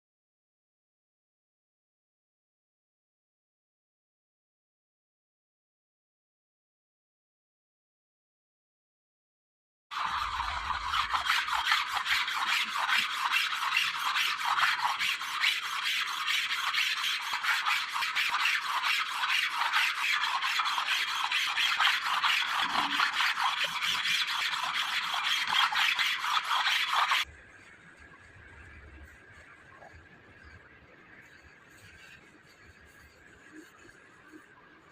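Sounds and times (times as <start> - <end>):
hand rasping on metal: 10.0 - 27.2.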